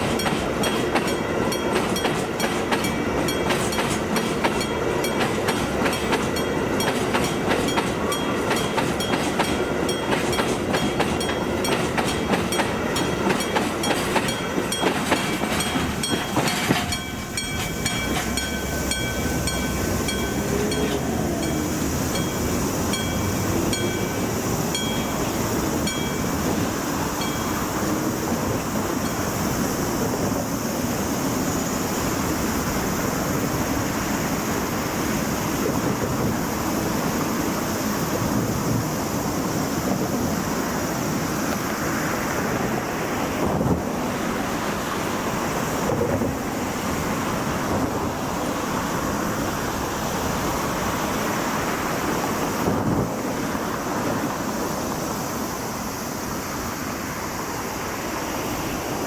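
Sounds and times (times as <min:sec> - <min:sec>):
level-crossing alarm ringing: 0:00.0 - 0:29.4
wind noise on microphone: 0:00.0 - 0:57.4.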